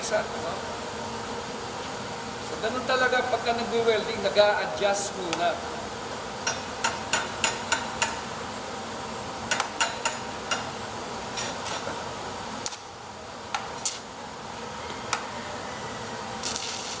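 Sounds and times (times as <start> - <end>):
steady hiss: 0.0 - 17.0
welding electrode tapping metal: 6.4 - 8.4, 9.4 - 12.0, 12.6 - 14.1, 16.4 - 17.0.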